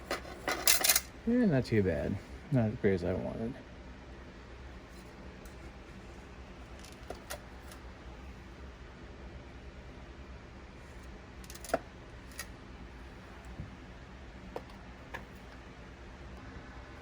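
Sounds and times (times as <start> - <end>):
low steady hum: 0.0 - 17.0
small parts clicking on workbench: 11.4 - 12.5.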